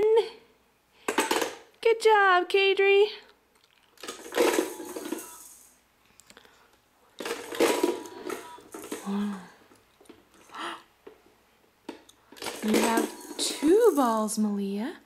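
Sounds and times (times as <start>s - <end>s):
gumball machine clattering: 3.6s - 5.8s, 7.2s - 10.6s, 11.9s - 14.3s.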